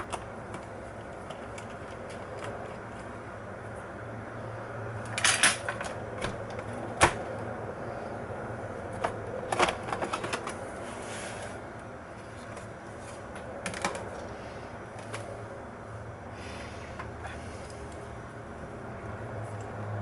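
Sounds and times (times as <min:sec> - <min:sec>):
laptop parts and tools clicking: 0:00.0 - 0:03.2, 0:05.0 - 0:07.5, 0:08.9 - 0:10.8, 0:13.3 - 0:15.3
steady low hum: 0:00.0 - 0:20.0.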